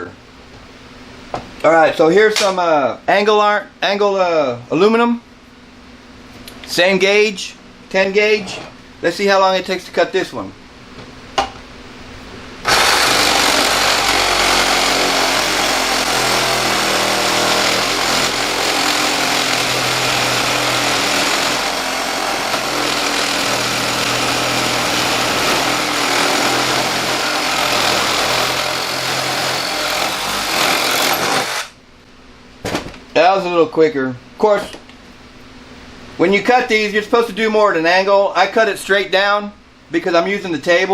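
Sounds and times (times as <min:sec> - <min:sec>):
reciprocating saw cutting aluminum: 0:12.6 - 0:31.8.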